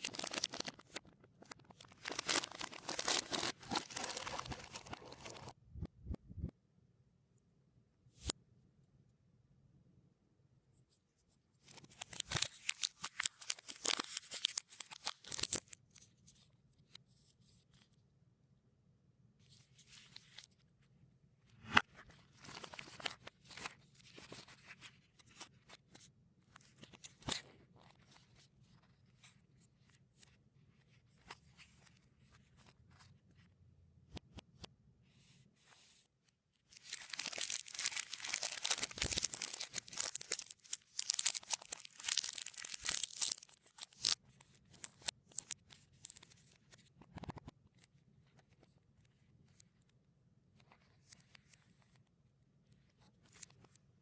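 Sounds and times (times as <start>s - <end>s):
plastic wrappers crinkling: 0.0s - 5.6s, 11.8s - 15.8s, 36.7s - 46.3s.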